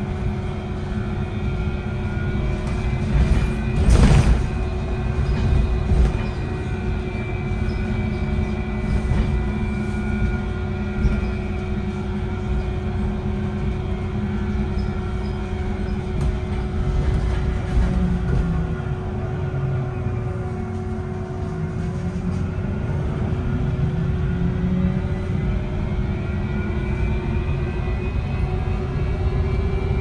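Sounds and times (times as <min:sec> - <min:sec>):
bus drive high whine: 0:00.0 - 0:30.0.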